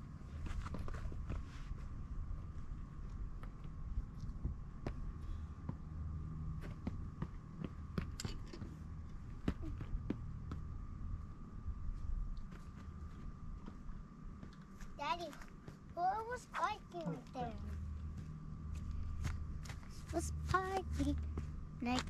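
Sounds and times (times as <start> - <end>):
faint hum: 0.0 - 22.0.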